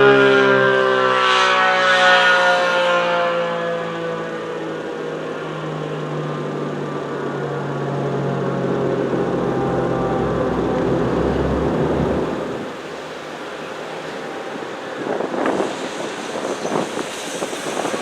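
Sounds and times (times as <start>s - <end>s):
warning siren winding down: 0.0s - 15.0s
low rumble: 8.9s - 13.0s.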